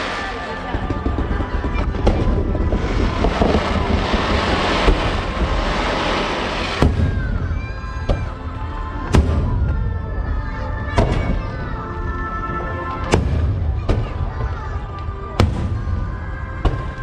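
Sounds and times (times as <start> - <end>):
fireworks bangs: 0.0 - 17.0
music with sustained notes: 0.0 - 17.0.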